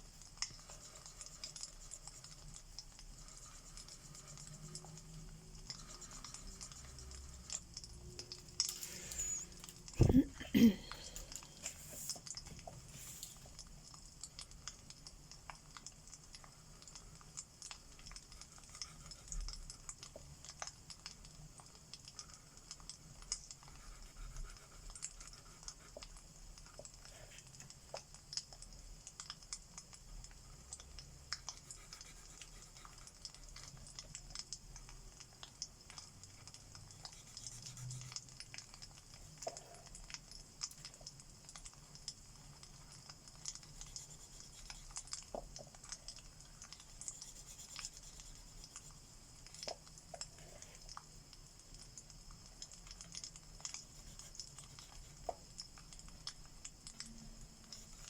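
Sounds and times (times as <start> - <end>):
fireplace crackling: 8.2 - 12.2
markers scratching on paper: 8.6 - 10.1, 37.0 - 38.2, 46.9 - 48.9.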